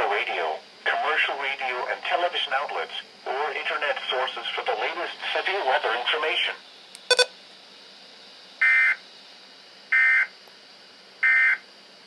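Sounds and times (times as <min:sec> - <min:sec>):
buzzy click: 0:07.0 - 0:07.3.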